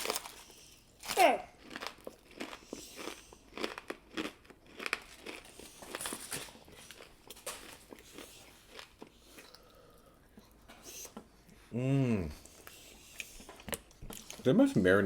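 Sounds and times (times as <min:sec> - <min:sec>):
crunching fried chicken: 0:00.0 - 0:09.7
soft chewing: 0:00.0 - 0:14.9.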